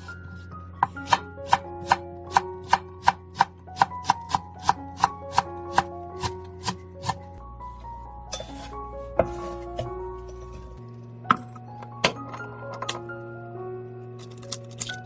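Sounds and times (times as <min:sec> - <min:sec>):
background music: 0:00.0 - 0:15.0
knife chopping on cutting board: 0:00.8 - 0:07.2.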